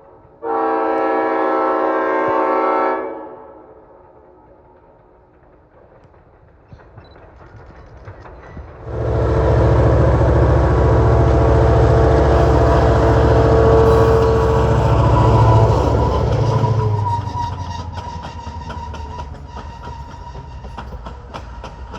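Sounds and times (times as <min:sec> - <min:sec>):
locomotive rumble and hum: 0:07.0 - 0:21.9.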